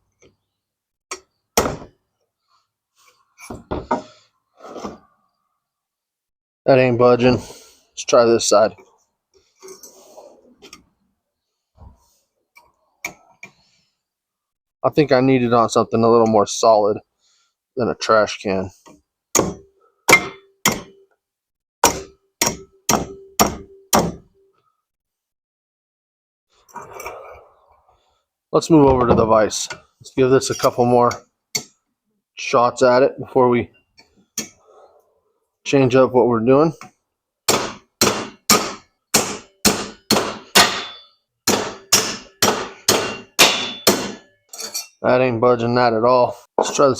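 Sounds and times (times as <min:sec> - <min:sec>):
hammer striking metal: 0:19.4 - 0:21.0, 0:21.8 - 0:24.3, 0:37.5 - 0:44.9.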